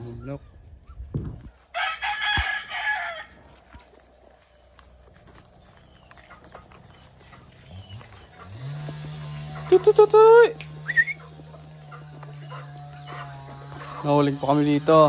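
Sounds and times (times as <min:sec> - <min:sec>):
rooster crowing: 0:01.7 - 0:03.5.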